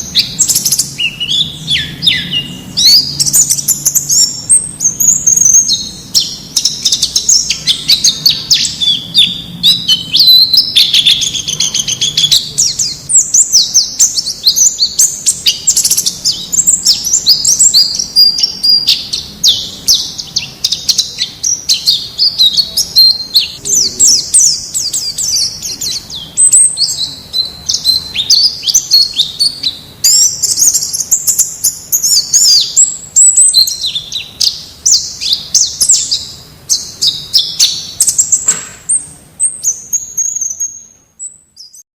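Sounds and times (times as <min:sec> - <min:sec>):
birds chirping and trilling: 0:00.0 - 0:41.9.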